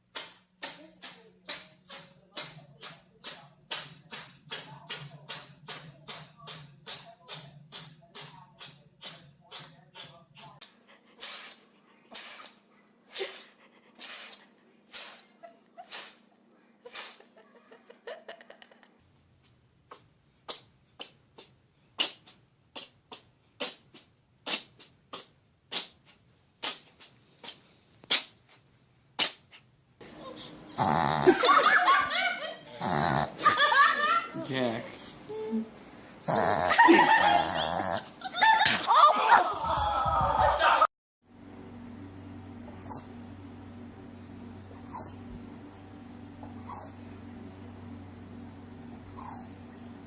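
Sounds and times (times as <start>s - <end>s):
pet sneezing: 11.2s - 16.3s, 16.9s - 17.3s, 19.9s - 28.6s, 29.2s - 29.7s, 46.6s - 47.0s, 49.2s - 49.5s
loud human laughter: 16.9s - 19.0s, 31.2s - 34.4s, 36.6s - 40.9s.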